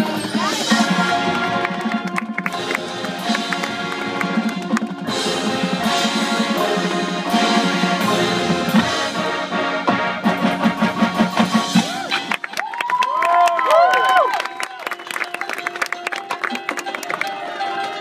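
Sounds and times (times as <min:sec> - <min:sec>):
brass ensemble: 0:00.0 - 0:12.8
drum line: 0:00.0 - 0:12.9.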